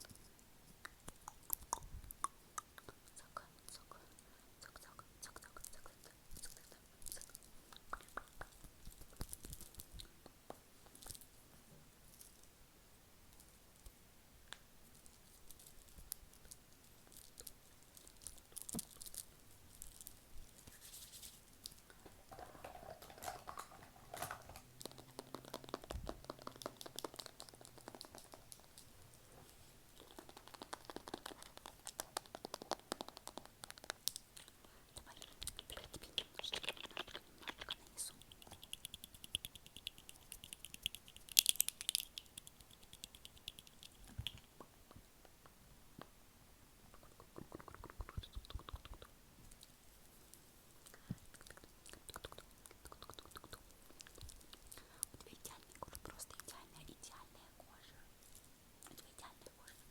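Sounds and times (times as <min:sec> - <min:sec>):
wet mouth clicks and smacks: 0:00.8 - 0:03.2, 0:07.2 - 0:11.2, 0:24.7 - 0:28.9, 0:30.0 - 0:46.2, 0:46.9 - 0:49.7, 0:50.8 - 0:56.5
crinkly rustling: 0:14.9 - 0:25.0.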